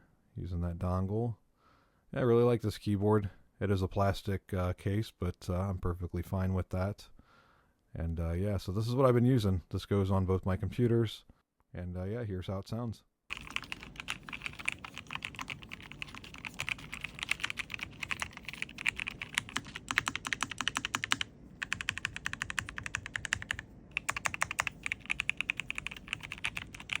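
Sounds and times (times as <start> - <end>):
fast mechanical keyboard typing: 13.3 - 27.0.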